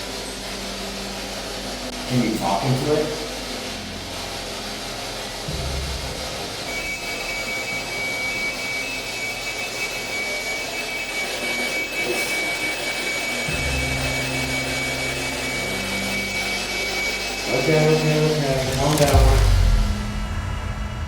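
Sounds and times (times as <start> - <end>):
deeper hum: 0.0 - 8.6, 13.5 - 21.0
steady high-pitched tone: 0.0 - 21.0
ice machine whooshing: 13.3 - 21.0.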